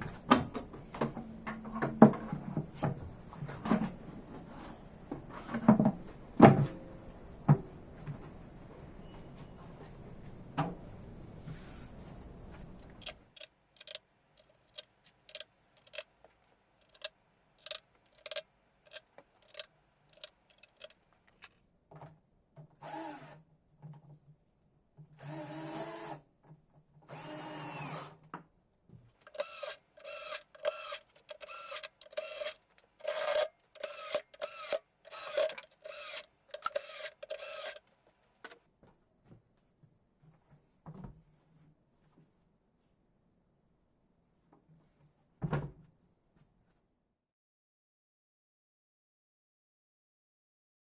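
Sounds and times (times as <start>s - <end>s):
power drill running: 22.8s - 23.4s, 25.2s - 26.2s, 27.1s - 28.1s, 29.3s - 37.8s.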